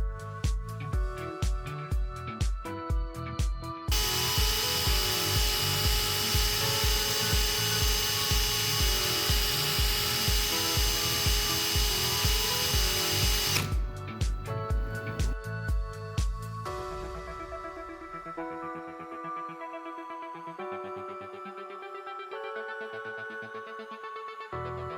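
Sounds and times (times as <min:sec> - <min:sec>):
background music with beat: 0:00.0 - 0:24.9
electric drill whining: 0:03.9 - 0:15.3.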